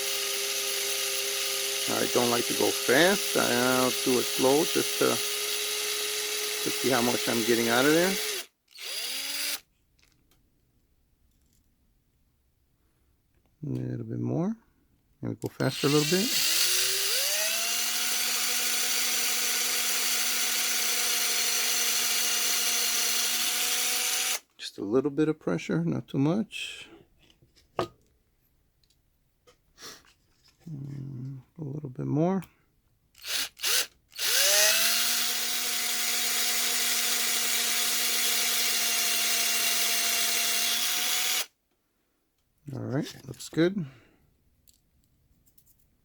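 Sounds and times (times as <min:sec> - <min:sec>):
small electric drill whining: 0:00.0 - 0:09.7, 0:15.7 - 0:24.5, 0:33.2 - 0:41.6.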